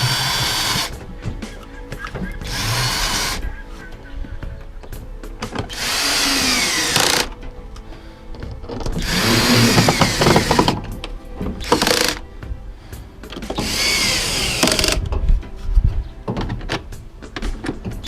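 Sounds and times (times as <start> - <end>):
power drill driving screws: 0.0 - 0.9, 2.4 - 3.4, 5.7 - 7.3, 9.0 - 10.8, 11.6 - 12.2, 13.5 - 15.0.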